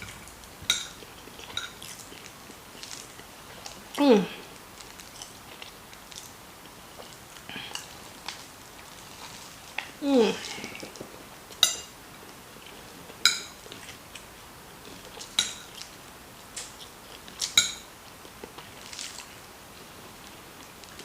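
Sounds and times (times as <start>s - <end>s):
cutlery clinking on a plate: 0.0s - 1.9s, 11.6s - 11.9s, 13.2s - 13.6s, 15.3s - 15.8s, 17.5s - 17.9s.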